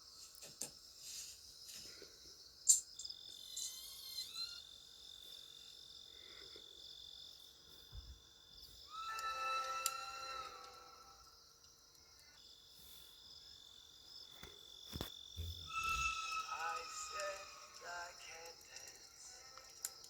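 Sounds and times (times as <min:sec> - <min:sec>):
crickets chirping: 0:00.0 - 0:20.0
faint clicks: 0:16.5 - 0:20.0.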